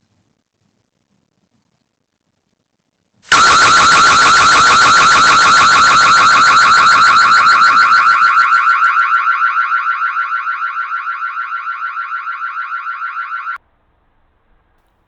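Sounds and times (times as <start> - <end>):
electronic siren warbling: 3.3 - 13.6.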